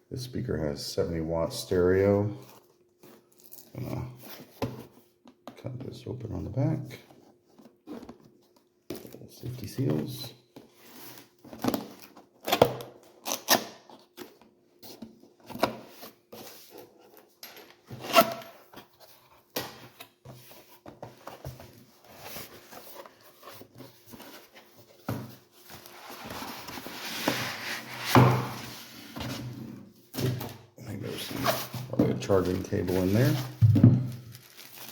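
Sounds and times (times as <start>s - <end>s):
packaging rustling: 31.0s - 34.9s.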